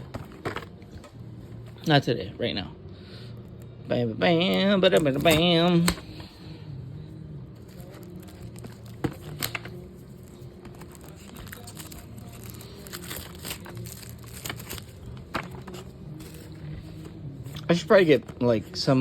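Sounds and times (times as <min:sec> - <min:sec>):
wrapper crinkling and tearing: 0:07.6 - 0:17.0.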